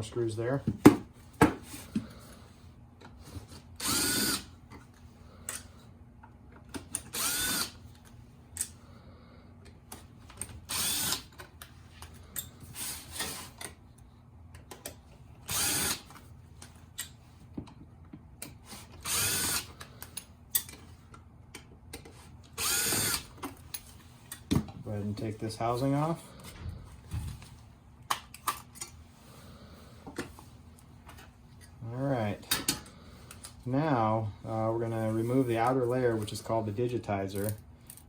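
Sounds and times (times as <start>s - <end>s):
electric screwdriver whirring: 3.8s - 4.5s, 7.0s - 7.8s, 10.7s - 11.3s, 15.5s - 16.1s, 19.0s - 19.7s, 22.6s - 23.3s
screws and parts clicking: 6.7s - 7.8s, 10.3s - 11.6s.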